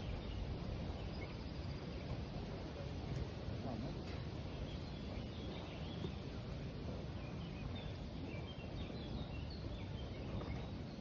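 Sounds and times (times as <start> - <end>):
outdoor background noise: 0.0 - 11.0
faint high bird chirps: 7.1 - 11.0.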